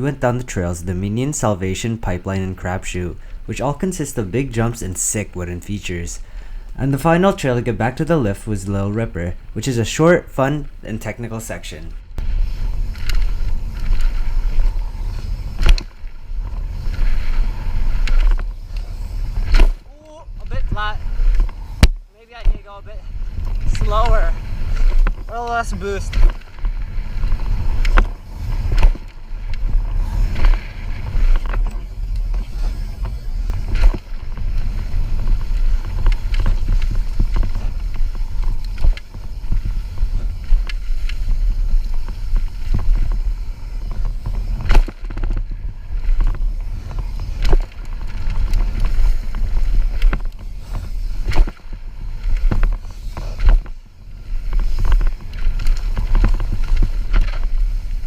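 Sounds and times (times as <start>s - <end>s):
tyre noise on dirt: 12.2s - 58.0s
bike knocks and rattles: 21.2s - 58.0s.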